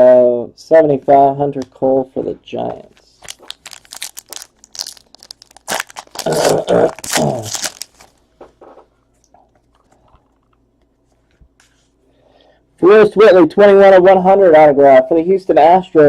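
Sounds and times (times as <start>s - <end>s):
foil wrappers tearing and crinkling: 3.2s - 8.2s.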